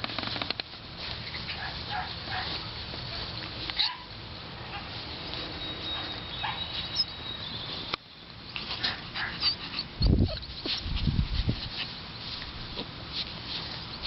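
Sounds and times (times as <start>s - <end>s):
puppies yipping and whining: 5.5s - 7.8s, 8.5s - 10.8s.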